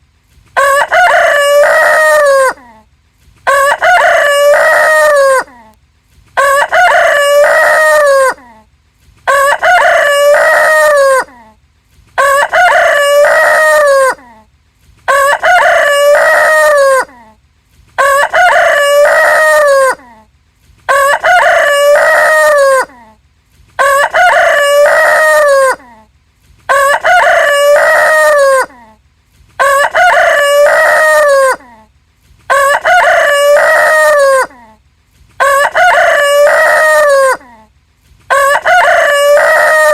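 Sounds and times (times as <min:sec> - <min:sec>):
rooster crowing: 0:00.6 - 0:02.7, 0:03.4 - 0:05.6, 0:06.4 - 0:08.5, 0:09.3 - 0:11.4, 0:12.2 - 0:14.3, 0:15.1 - 0:17.2, 0:18.0 - 0:20.0, 0:20.9 - 0:23.0, 0:23.8 - 0:26.0, 0:26.7 - 0:28.8, 0:29.6 - 0:31.8, 0:32.5 - 0:34.7, 0:35.4 - 0:37.5, 0:38.3 - 0:39.9.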